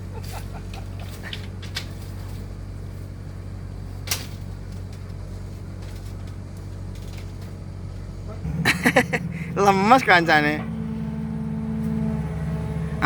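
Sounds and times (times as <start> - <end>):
excavator diesel engine running: 0.0 - 13.0.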